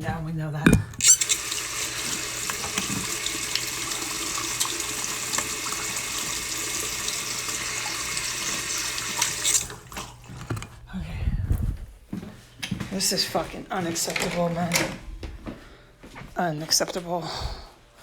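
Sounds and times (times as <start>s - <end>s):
tap water running into sink: 0.7s - 9.9s.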